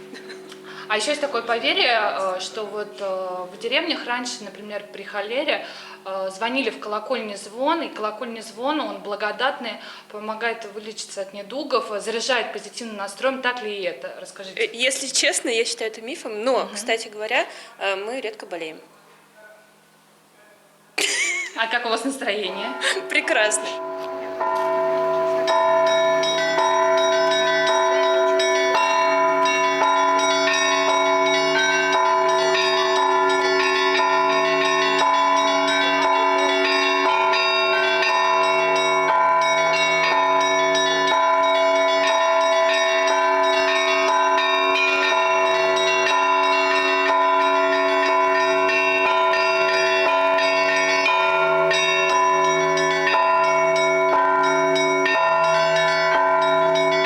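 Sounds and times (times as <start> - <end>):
small bells chiming: 0.0 - 7.1, 22.3 - 57.0
large bells ringing: 0.0 - 12.6, 21.4 - 57.0.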